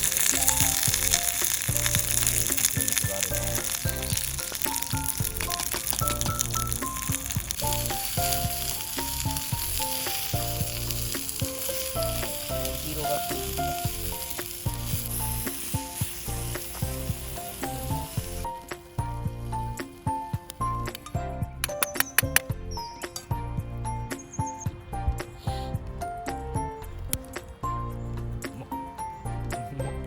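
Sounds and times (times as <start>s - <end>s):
food sizzling in a pan: 0.0s - 20.3s
light background music: 0.0s - 30.0s.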